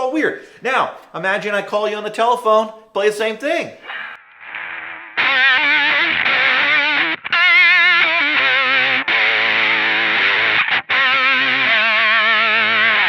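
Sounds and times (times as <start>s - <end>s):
distorted electric guitar: 4.2s - 13.0s.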